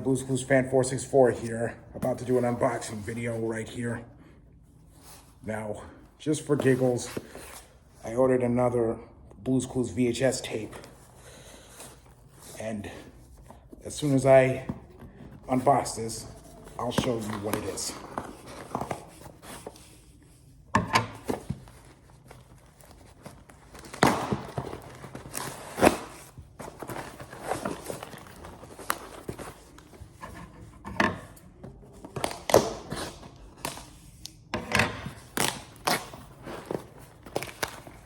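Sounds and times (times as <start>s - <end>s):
packaging tearing and rustling: 35.2s - 38.0s.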